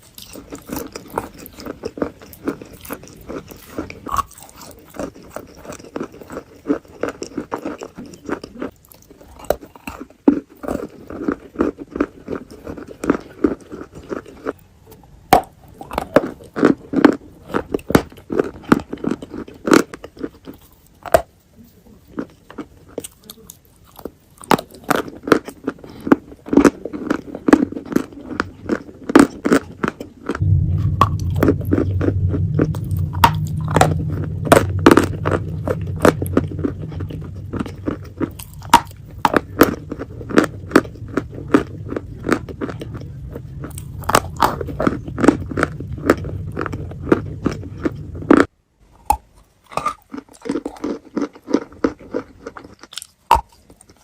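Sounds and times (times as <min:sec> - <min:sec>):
crunchy biting and chewing: 0:00.0 - 0:54.0
steady low hum: 0:10.4 - 0:50.8.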